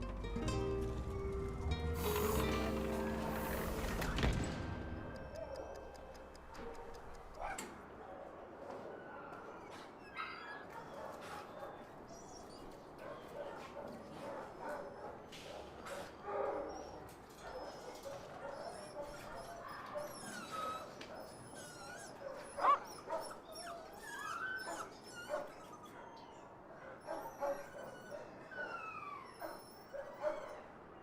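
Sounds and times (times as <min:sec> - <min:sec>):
dogs whimpering and yipping: 0:08.7 - 0:31.0
dog yelping: 0:09.0 - 0:15.3, 0:16.3 - 0:30.8.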